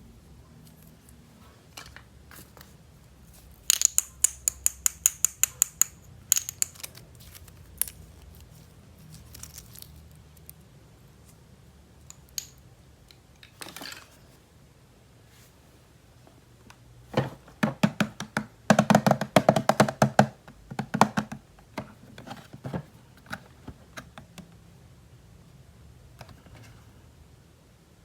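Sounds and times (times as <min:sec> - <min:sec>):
sharp clicks of toy packaging: 0:06.4 - 0:10.6.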